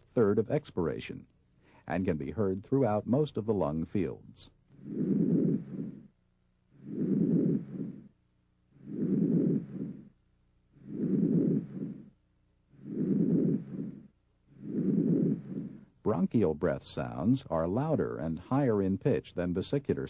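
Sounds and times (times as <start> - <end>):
soft low breathing: 1.6 - 1.9, 4.7 - 16.0.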